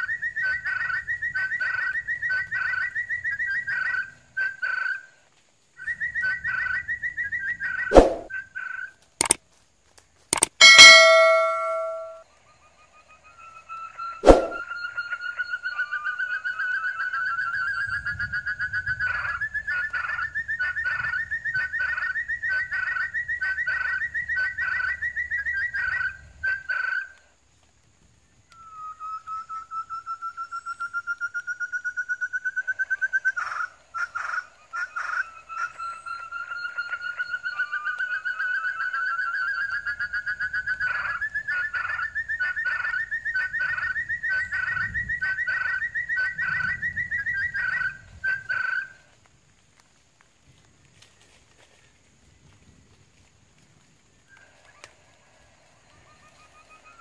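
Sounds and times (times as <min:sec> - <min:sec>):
quail whistling call: 0:00.0 - 0:05.1, 0:05.8 - 0:09.4, 0:10.4 - 0:12.2, 0:13.4 - 0:27.3, 0:28.4 - 0:49.2.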